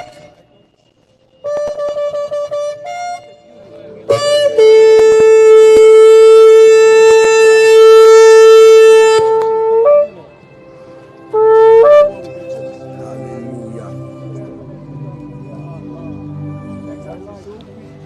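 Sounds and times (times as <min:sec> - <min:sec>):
shofar blast: 0:04.1 - 0:10.2, 0:11.3 - 0:12.2.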